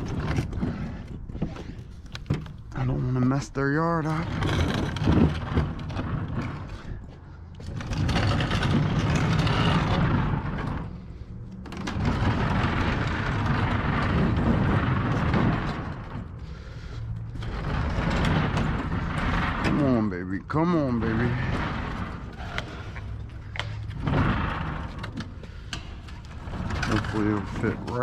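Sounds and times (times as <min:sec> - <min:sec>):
refrigerator dragged over dirt: 0:00.0 - 0:28.0.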